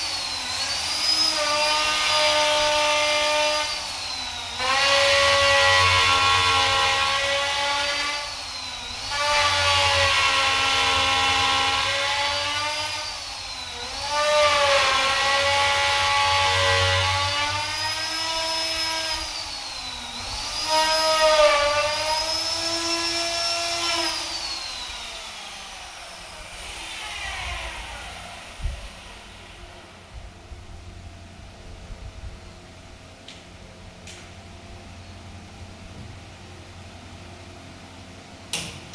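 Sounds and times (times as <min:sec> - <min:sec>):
power tool cutting wood: 0:00.0 - 0:30.8.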